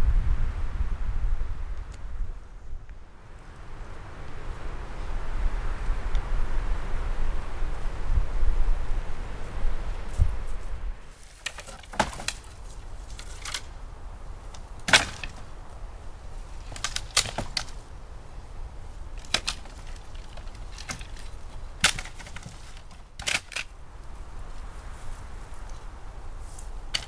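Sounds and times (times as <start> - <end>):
sharp cracks and pops: 11.3 - 13.8, 14.4 - 15.8, 16.6 - 17.9, 19.1 - 23.8.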